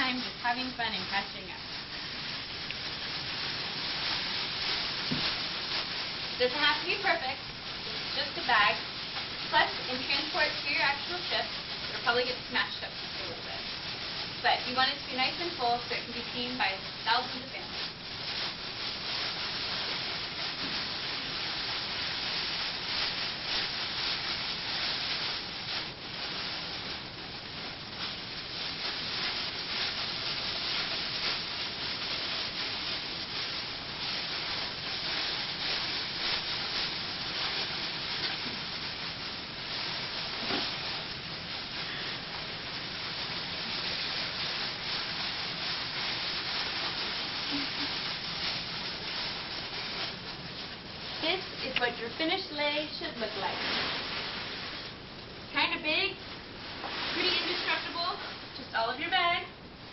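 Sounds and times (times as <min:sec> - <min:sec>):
plastic bags rustling: 0:00.0 - 0:59.5.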